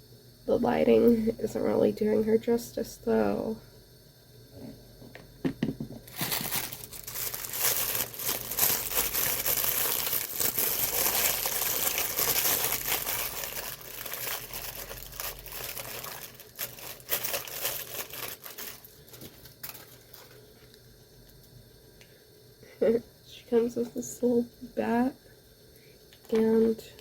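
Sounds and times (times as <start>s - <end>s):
packaging crinkling: 5.8s - 20.8s.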